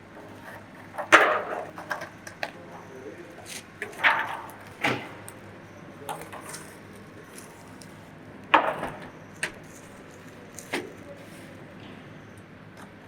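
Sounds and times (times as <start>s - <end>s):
knocks and clatters of handling: 3.4s - 5.4s.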